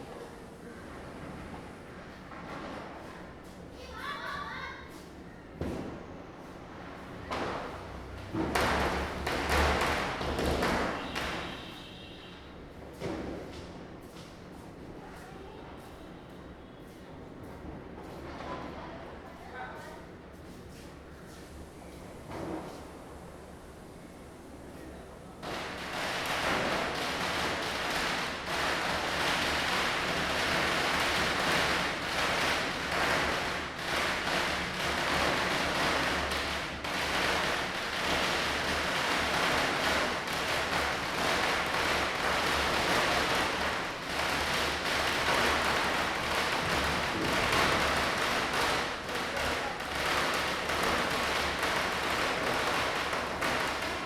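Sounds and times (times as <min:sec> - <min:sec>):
firecrackers crackling: 0:06.9 - 0:13.5, 0:25.3 - 0:54.0.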